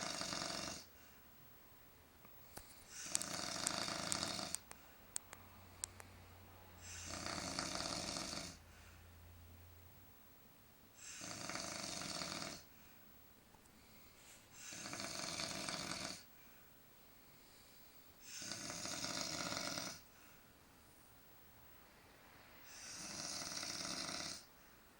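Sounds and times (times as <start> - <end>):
man snoring: 0.0 - 0.9, 2.9 - 4.6, 6.8 - 8.6, 11.0 - 12.7, 14.6 - 16.3, 18.2 - 20.0, 22.6 - 24.5
quiet breaths: 0.0 - 10.0, 10.9 - 24.9.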